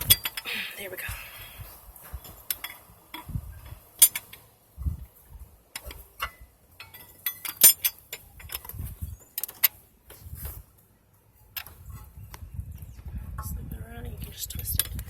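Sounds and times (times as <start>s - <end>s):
wrench clinking against metal: 0.0s - 0.5s, 2.2s - 4.5s, 5.8s - 9.8s.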